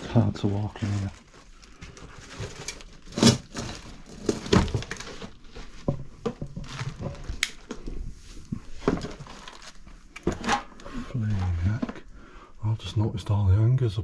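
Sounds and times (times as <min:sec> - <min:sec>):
crinkly rustling: 0:00.0 - 0:12.1
footsteps knocking and thudding: 0:05.6 - 0:09.3.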